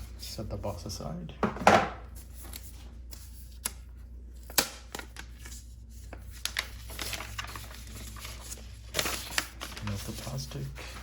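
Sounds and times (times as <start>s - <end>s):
packaging rustling: 4.5s - 11.0s.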